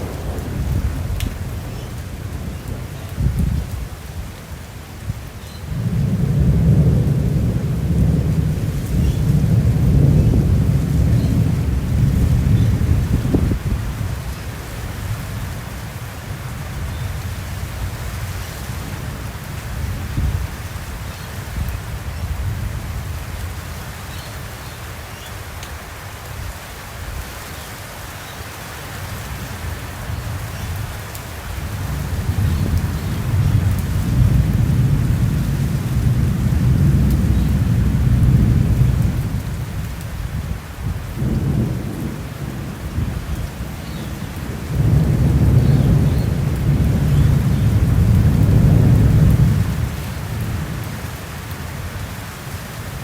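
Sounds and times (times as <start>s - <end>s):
deep rolls of thunder: 0.0s - 3.8s, 5.7s - 14.2s, 31.6s - 50.9s
steady rain falling: 0.0s - 53.0s.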